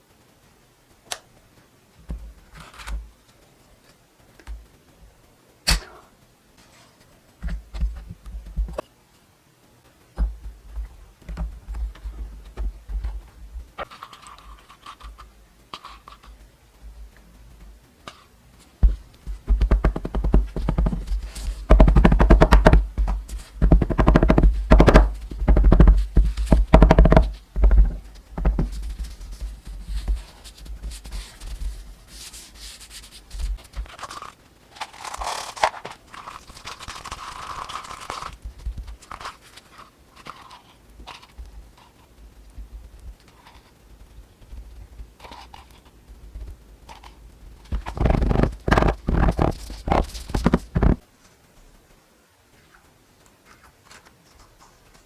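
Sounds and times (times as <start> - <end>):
objects scratching and knocking: 10.2 - 16.4, 18.1 - 51.1
low bumps: 18.8 - 32.0, 45.9 - 51.0.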